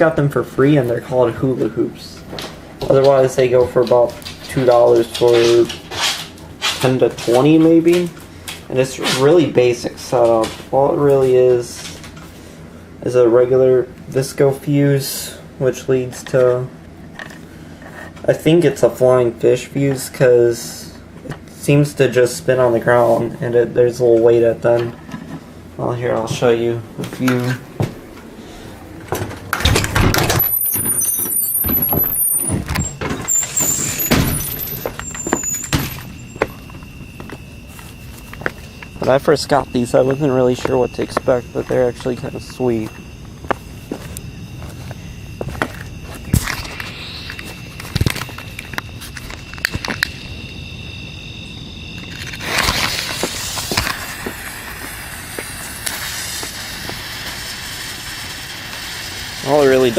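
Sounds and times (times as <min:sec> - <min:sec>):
fireworks rushing hiss: 0:30.2 - 0:36.3, 0:43.9 - 0:50.2, 0:52.1 - 0:59.9
thin high tone: 0:30.2 - 0:54.4
high wavering whistles: 0:30.4 - 0:57.1
sharp pops and ticks: 0:46.2 - 0:50.2, 0:52.0 - 0:57.4.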